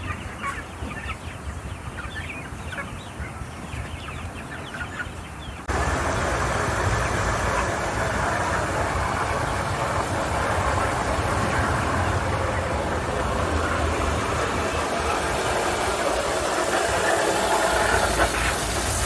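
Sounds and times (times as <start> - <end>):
chickens clucking: 0.0 - 19.0
loud steady rushing noise: 5.7 - 19.0.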